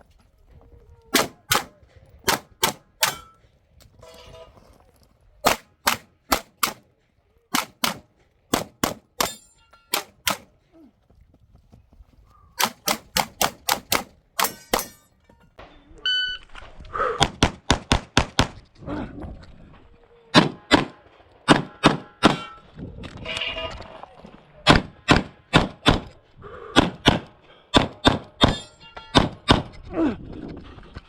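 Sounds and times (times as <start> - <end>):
rapid pistol fire: 1.2 - 3.3, 5.4 - 6.8, 7.5 - 9.4, 12.6 - 14.9.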